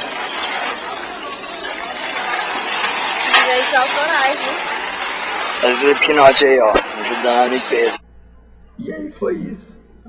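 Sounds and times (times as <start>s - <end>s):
crowd voices chattering: 0.0s - 9.6s.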